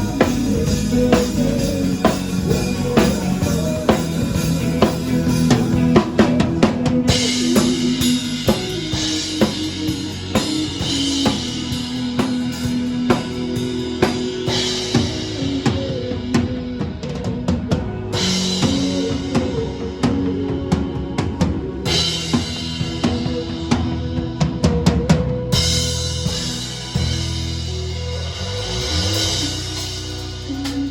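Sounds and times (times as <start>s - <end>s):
held low notes: 0.0s - 30.9s
live band music: 0.0s - 30.9s.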